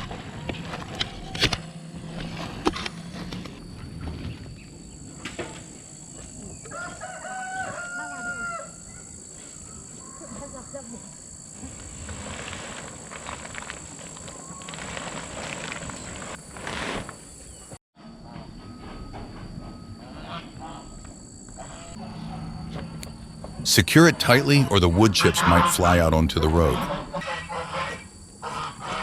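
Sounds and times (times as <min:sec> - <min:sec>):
rooster crowing: 0:06.6 - 0:09.1.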